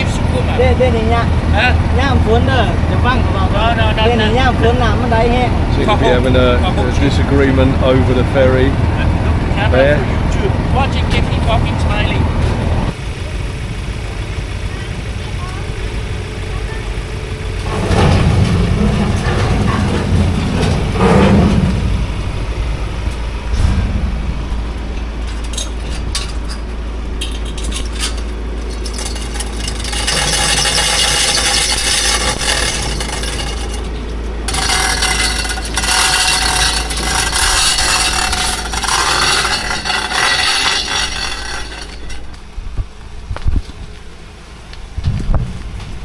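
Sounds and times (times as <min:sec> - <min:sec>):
engine low rumble: 0:00.0 - 0:46.0
rattles and clicks: 0:17.5 - 0:43.0.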